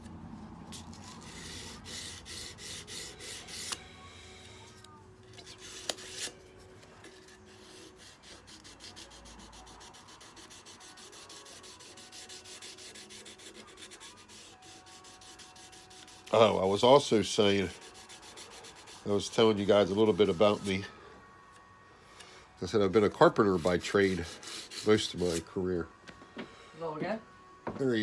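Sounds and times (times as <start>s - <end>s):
hand sanding steel knife: 0.7s - 4.0s, 5.3s - 20.9s, 22.8s - 25.6s.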